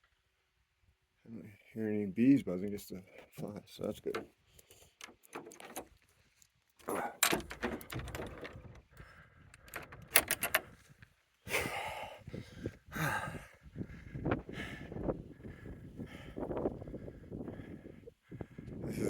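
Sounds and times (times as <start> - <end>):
rattling clicks: 5.0 - 6.0, 7.1 - 10.8
door knocking and clicking: 7.2 - 8.8.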